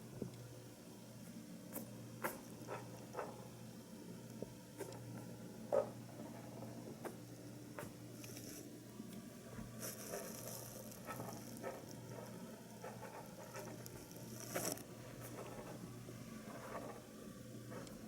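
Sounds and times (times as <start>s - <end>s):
rabbit crunching pellets: 1.2s - 3.6s, 4.3s - 18.0s
rabbit sniffing: 1.7s - 3.5s, 9.6s - 18.0s.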